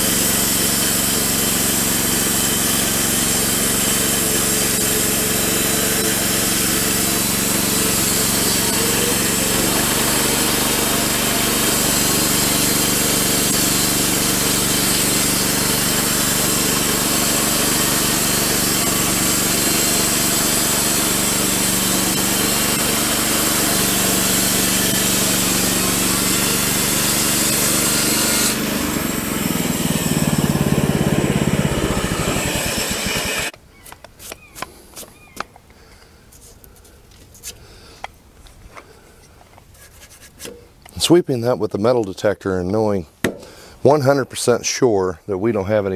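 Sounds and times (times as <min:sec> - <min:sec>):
saw blade hissing through wood: 0:00.0 - 0:33.5
bandsaw mill engine drone: 0:00.0 - 0:33.6.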